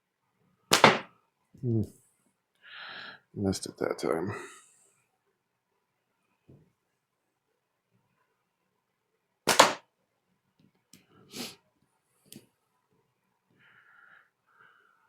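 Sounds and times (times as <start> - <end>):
slingshot crack: 0.7 - 1.1, 9.5 - 9.8.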